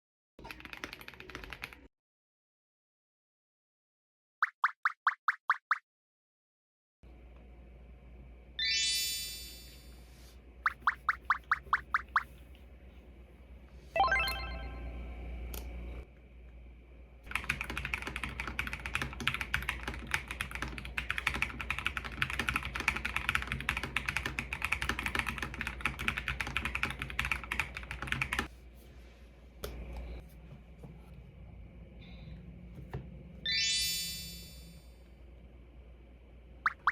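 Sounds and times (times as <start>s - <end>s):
mechanical keyboard typing: 0.4s - 1.9s, 17.3s - 28.5s
rising electronic chime: 8.6s - 9.9s, 14.0s - 15.0s, 33.5s - 34.9s.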